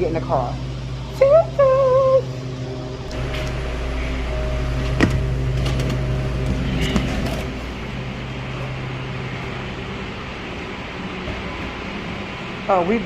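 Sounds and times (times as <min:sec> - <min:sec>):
low mechanical hum: 0:00.0 - 0:13.0.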